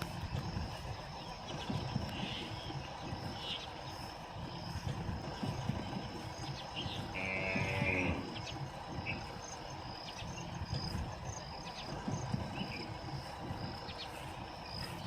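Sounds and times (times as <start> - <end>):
insects chirping: 0.0 - 15.0
animal call: 6.8 - 9.2.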